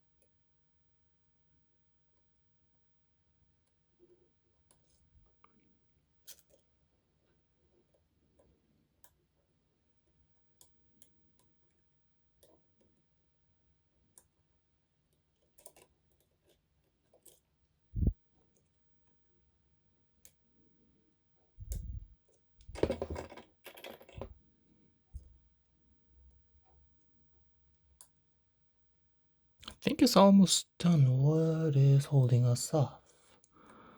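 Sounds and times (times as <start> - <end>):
rustling handling noise: 21.7 - 24.4.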